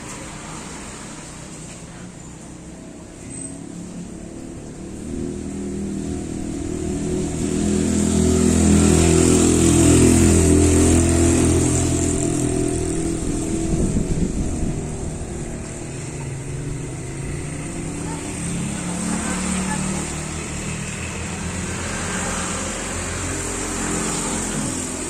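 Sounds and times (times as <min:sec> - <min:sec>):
vehicle engine passing: 0:02.6 - 0:25.0
strong wind in trees: 0:04.9 - 0:18.7.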